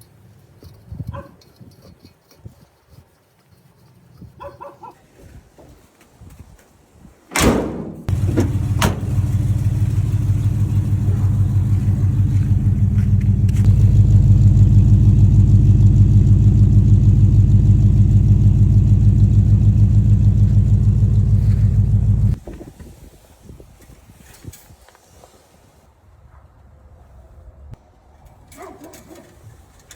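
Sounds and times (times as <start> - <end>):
truck engine starting and running: 7.4 - 22.4.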